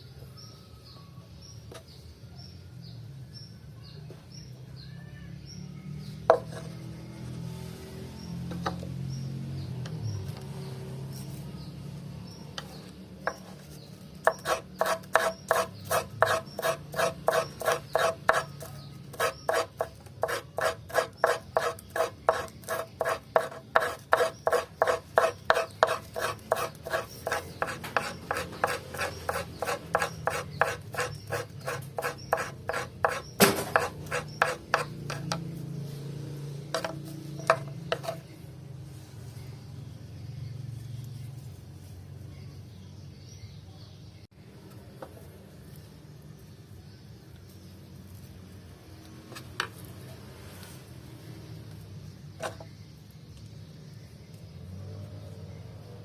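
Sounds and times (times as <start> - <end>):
hand file rasping on wood: 14.2 - 35.4, 36.8 - 38.2
sharp knock: 33.4 - 33.9.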